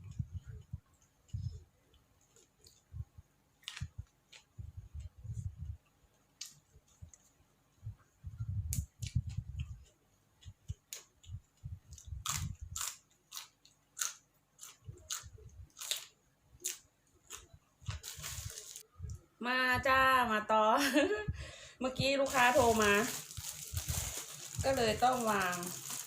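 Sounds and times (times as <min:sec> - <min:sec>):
person chewing crunchy food: 0:09.0 - 0:18.8.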